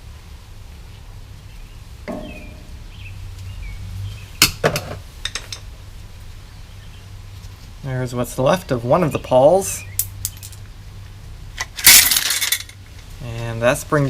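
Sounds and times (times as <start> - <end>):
steady low hum: 0.0 - 4.4.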